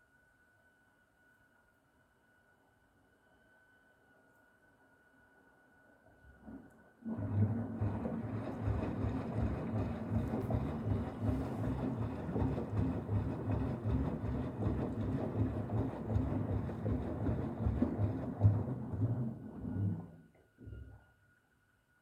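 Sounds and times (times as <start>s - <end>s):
washing machine rumbling: 6.4s - 21.0s.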